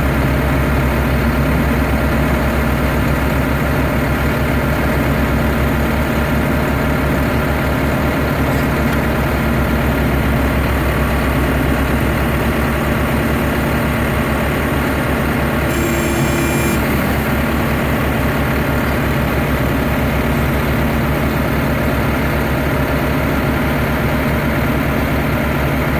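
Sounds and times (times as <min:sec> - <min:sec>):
engine running with low pulse: 0:00.0 - 0:23.4
short high tone: 0:15.7 - 0:17.3.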